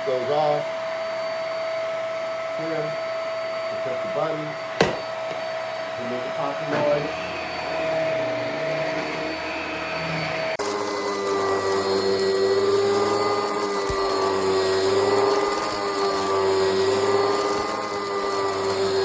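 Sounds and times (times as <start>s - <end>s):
upright vacuum cleaner running: 0.0s - 19.0s
low knock: 4.8s - 5.4s.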